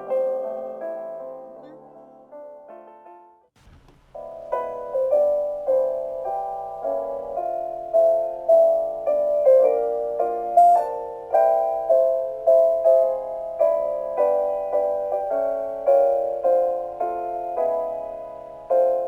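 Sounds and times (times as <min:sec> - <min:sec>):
soft piano melody: 0:00.0 - 0:19.0.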